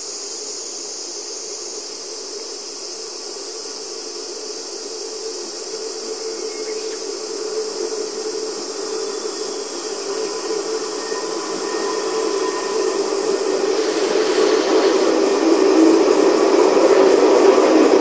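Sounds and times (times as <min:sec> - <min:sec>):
electric train rumbling: 0:00.7 - 0:18.0.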